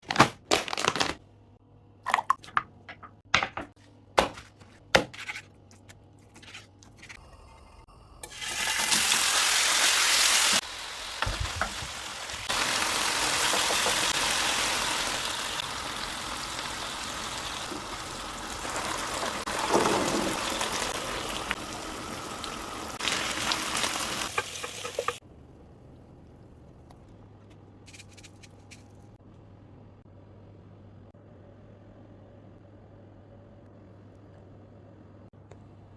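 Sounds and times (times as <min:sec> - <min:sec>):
food sizzling in a frying pan: 0:08.3 - 0:25.2.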